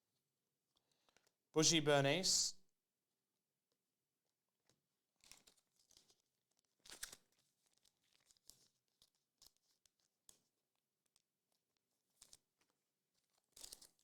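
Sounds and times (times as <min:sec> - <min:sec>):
wrapper crinkling and tearing: 0:05.2 - 0:10.1, 0:13.2 - 0:14.0.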